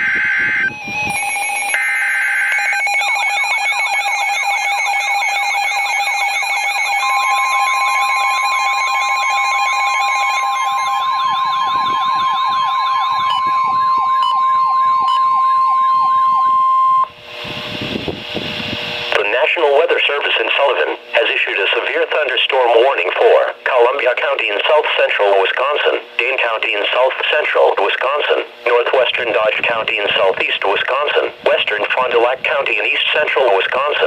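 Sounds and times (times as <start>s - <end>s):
screeching digital header tones: 0.0s - 17.2s
siren alarms wailing: 0.0s - 17.2s
steady warning tone: 0.0s - 34.0s
radio hiss: 18.5s - 34.0s.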